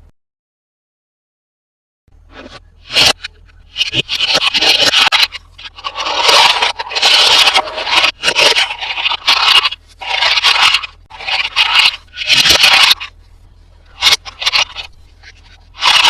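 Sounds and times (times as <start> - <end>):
packaging scraping and crinkling: 2.5 - 13.2, 14.0 - 16.0.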